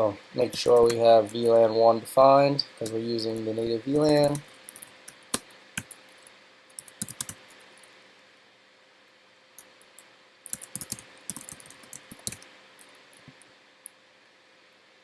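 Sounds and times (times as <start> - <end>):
faint steady hum: 0.0 - 15.0
typing on computer keyboard: 6.8 - 7.4, 10.5 - 12.4.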